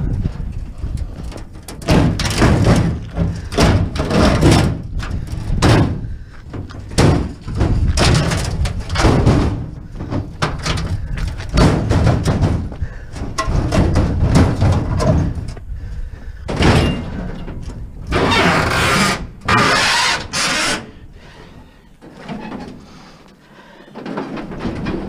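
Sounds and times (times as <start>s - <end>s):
scrap metal clanking: 16.5s - 21.0s
metal grinding scrapes: 18.1s - 21.0s.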